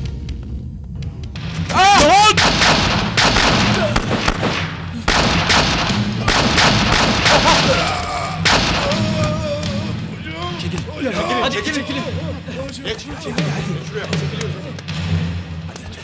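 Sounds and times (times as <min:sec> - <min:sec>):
heavy gunfire: 0:01.4 - 0:09.3.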